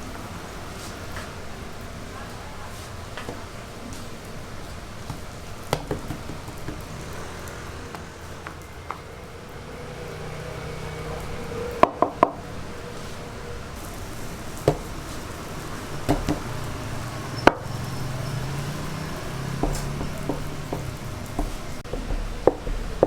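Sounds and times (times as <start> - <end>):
dough knocks and thumps on table: 5.0 - 7.1, 14.6 - 15.3, 16.0 - 16.7, 18.5 - 23.0.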